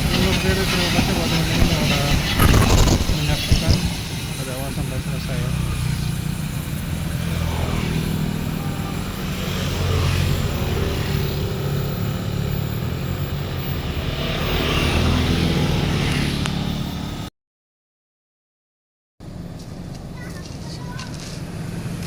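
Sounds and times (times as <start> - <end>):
diesel locomotive engine drone: 0.0 - 2.4, 3.2 - 17.3.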